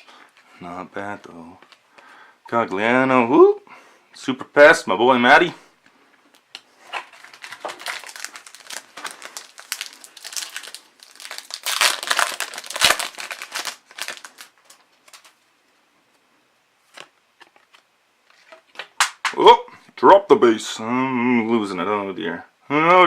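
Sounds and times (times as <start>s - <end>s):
card pack wrapper crinkling: 6.4s - 15.4s.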